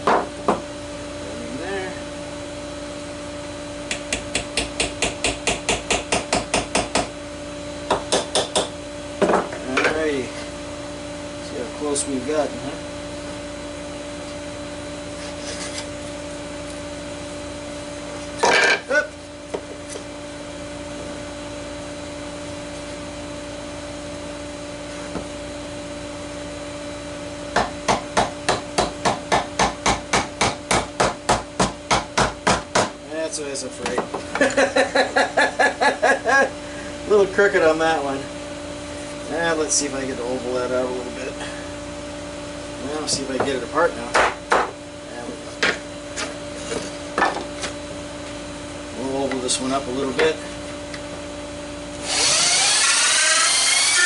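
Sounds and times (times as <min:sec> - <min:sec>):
steady hum: 0:00.0 - 0:54.0.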